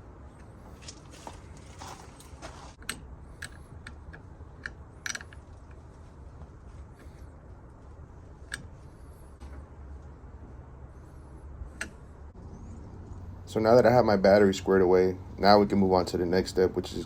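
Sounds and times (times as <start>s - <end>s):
low steady rumble: 0.0s - 17.0s.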